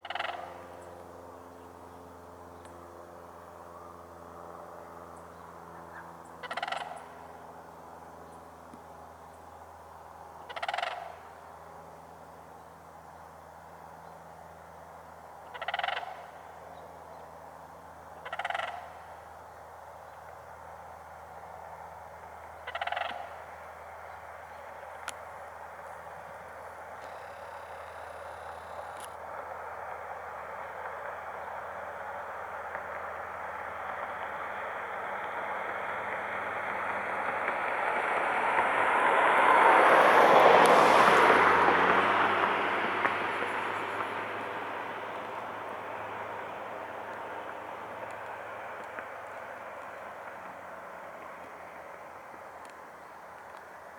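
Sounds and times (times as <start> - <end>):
crane rattling calls: 0.0 - 0.9, 5.8 - 7.4, 10.4 - 11.3, 15.4 - 16.4, 18.2 - 19.2, 22.5 - 24.9
vehicle passing by: 20.5 - 53.9.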